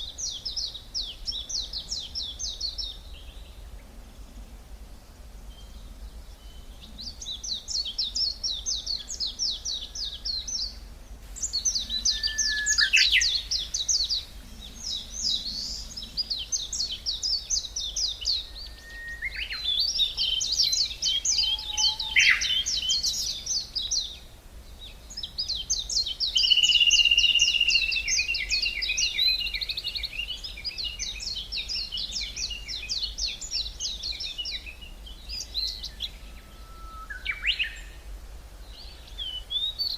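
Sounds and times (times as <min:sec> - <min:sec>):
songbirds trilling: 0:05.1 - 0:39.9.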